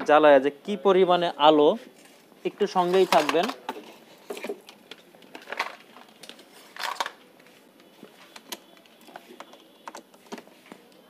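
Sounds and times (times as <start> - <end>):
hard objects clicking and clattering: 2.0 - 7.5.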